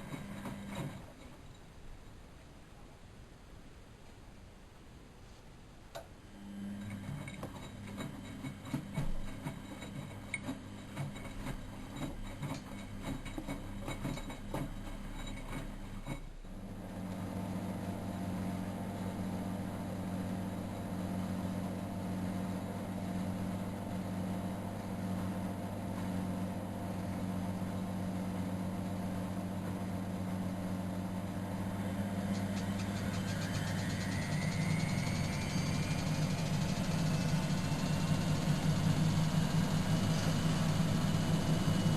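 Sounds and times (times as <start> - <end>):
washing machine clattering: 0.0 - 1.5, 6.9 - 16.3, 31.2 - 41.9
washing machine humming: 0.0 - 2.4, 6.0 - 41.9
rising machine whine: 31.5 - 41.9.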